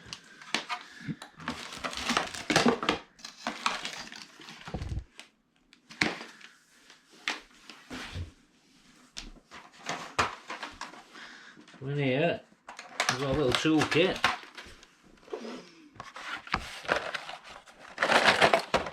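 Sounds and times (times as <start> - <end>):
plastic packaging rustling: 0.3 - 5.2, 12.7 - 14.9, 16.0 - 18.9
plastic parts clicking: 0.5 - 4.4, 12.7 - 14.7.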